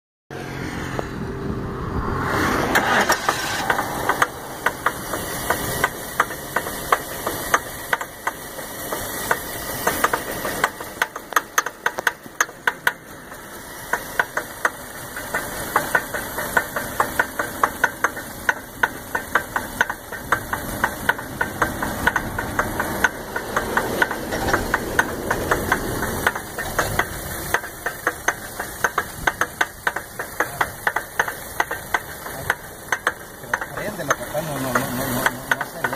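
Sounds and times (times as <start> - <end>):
car engine knocking clatter: 3.1 - 35.9.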